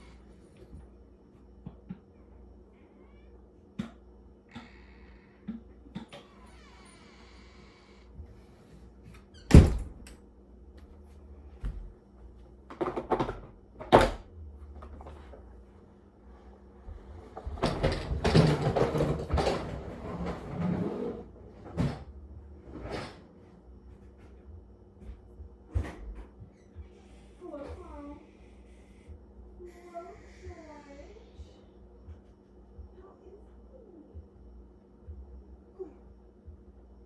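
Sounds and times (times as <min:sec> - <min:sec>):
door shutting: 0:09.1 - 0:10.1.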